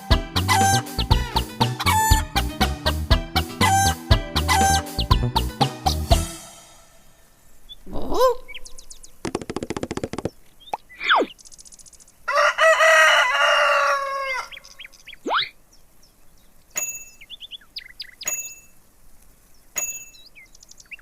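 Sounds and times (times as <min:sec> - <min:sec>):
chickens clucking: 0:00.4 - 0:06.0
rooster crowing: 0:12.3 - 0:14.7.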